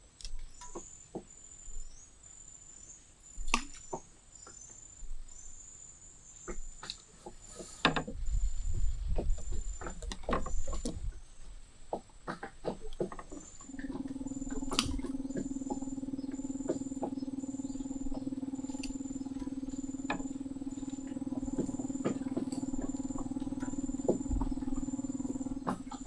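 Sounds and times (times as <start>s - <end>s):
insects trilling: 12.2s - 26.0s
sharp clicks and knocks: 12.3s - 26.0s
low rumble: 13.6s - 26.0s.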